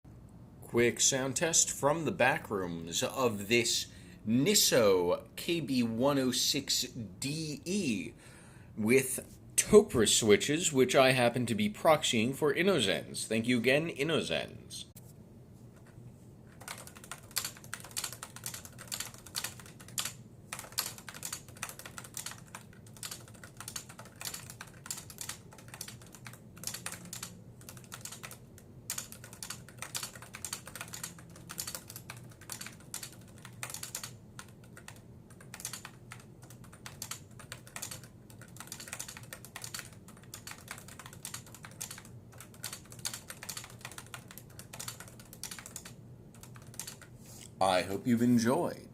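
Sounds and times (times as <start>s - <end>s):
soft keyboard keystrokes: 15.8s - 47.1s.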